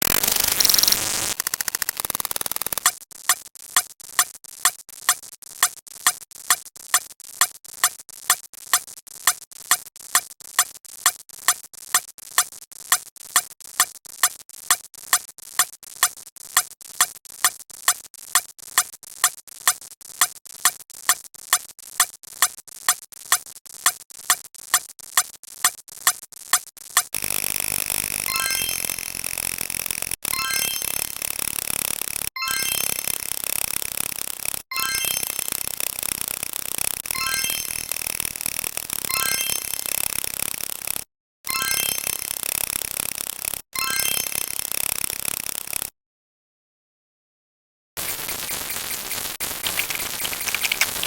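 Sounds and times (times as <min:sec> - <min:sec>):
sharp electronic clicks: 0:00.0 - 0:05.8, 0:26.0 - 0:45.6, 0:48.0 - 0:51.0.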